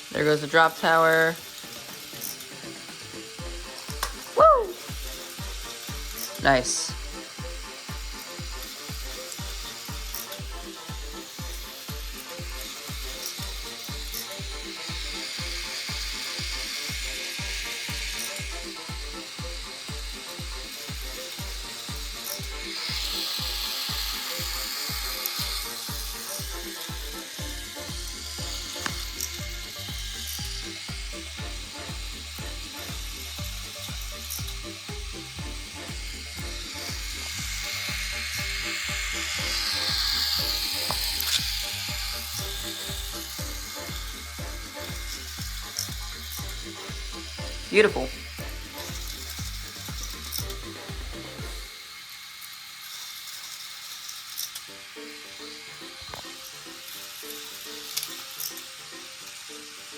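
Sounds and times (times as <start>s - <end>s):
toy roller coaster whirring and clatter: 0.0s - 59.9s
electronic music with kick drum: 0.9s - 51.7s.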